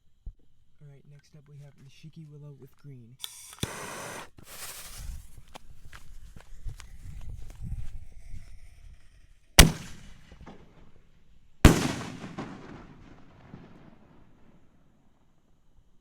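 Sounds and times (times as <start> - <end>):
firework shell bursting: 3.2 - 5.2, 11.7 - 13.9.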